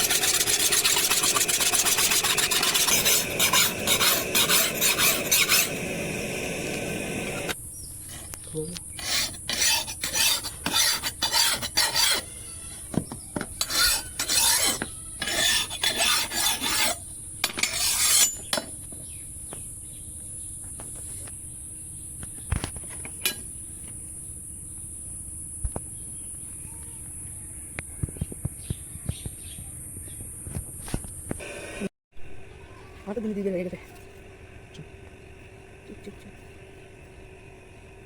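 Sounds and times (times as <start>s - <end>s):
hand file rasping on steel: 0.0s - 7.5s, 9.0s - 12.4s, 13.6s - 18.6s.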